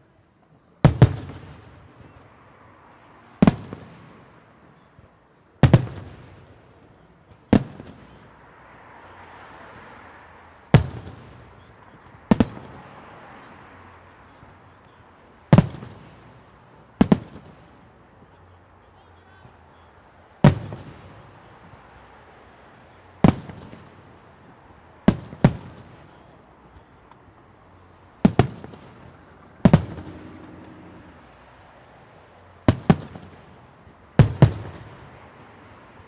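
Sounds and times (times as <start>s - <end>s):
fireworks booming with echo: 0.8s - 2.2s, 3.4s - 8.3s, 10.7s - 13.0s, 14.3s - 18.4s, 20.4s - 21.9s, 23.0s - 24.3s, 25.0s - 27.2s, 27.8s - 31.7s, 32.6s - 35.4s.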